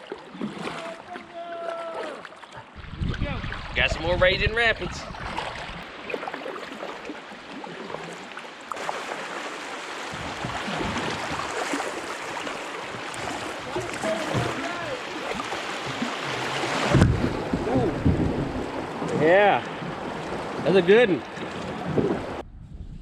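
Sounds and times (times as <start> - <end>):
water rushing over river rapids: 5.5 - 22.4
dull thump: 16.8 - 19.3.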